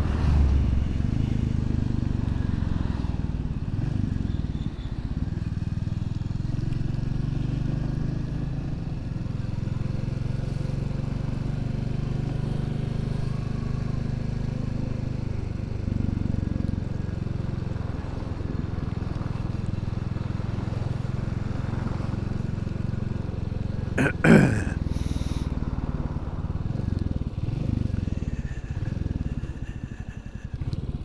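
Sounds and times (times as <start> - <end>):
motorcycle engine running: 25.8 - 31.0.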